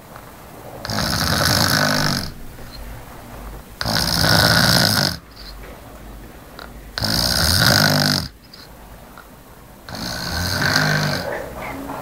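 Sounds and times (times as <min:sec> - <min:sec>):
quiet breathing: 0:00.0 - 0:12.0
person snoring: 0:00.8 - 0:02.8, 0:03.8 - 0:05.6, 0:06.6 - 0:08.7, 0:09.9 - 0:11.6.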